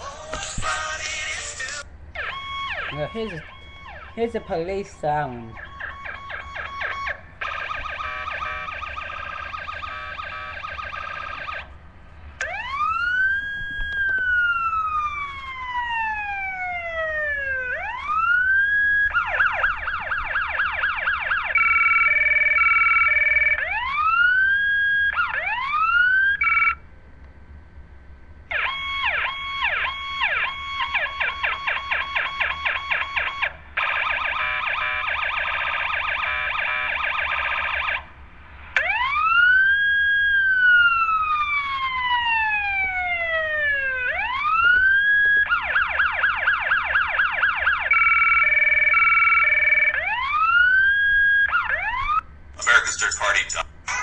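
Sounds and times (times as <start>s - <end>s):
police siren ringtone: 0.0s - 11.7s, 12.4s - 26.8s, 28.5s - 38.1s, 38.8s - 53.6s.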